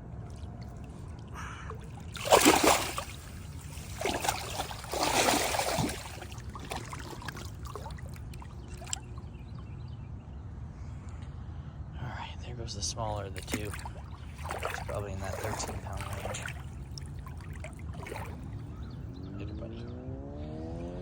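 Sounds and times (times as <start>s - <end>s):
water splashing: 0.0s - 9.2s, 13.1s - 18.9s.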